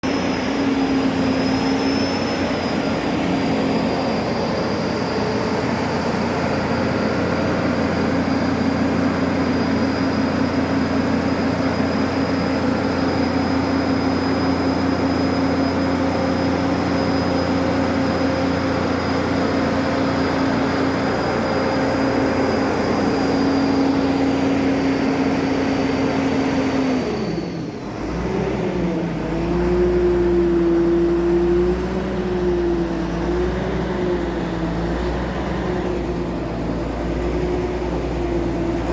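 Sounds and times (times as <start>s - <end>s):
thin high whine: 0.0s - 7.3s
excavator engine at high revs: 0.0s - 38.9s.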